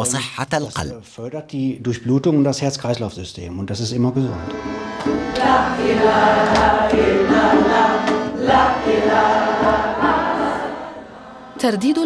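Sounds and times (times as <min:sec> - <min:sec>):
steady drone: 0:04.0 - 0:11.7
voices chanting: 0:04.1 - 0:12.0.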